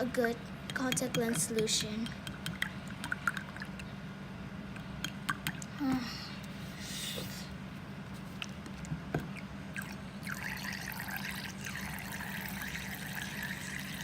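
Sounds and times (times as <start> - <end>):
liquid trickling into mixture: 9.3 - 14.0.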